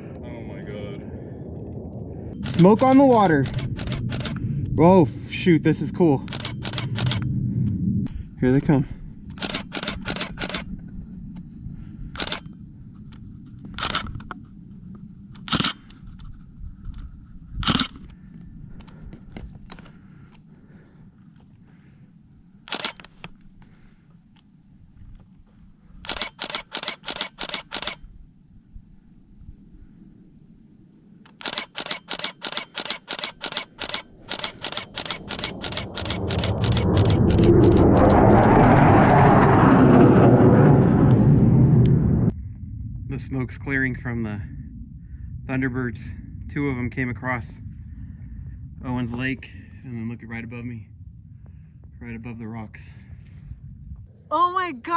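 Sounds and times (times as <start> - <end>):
low steady rumble: 0.0 - 26.3, 27.4 - 31.4, 33.4 - 54.9
camera shutter clicking: 2.6 - 4.4, 6.3 - 7.2, 9.3 - 10.7, 12.2 - 12.5, 13.8 - 14.2, 15.4 - 15.9, 17.6 - 18.0, 22.7 - 23.2, 26.0 - 28.0, 31.3 - 37.8.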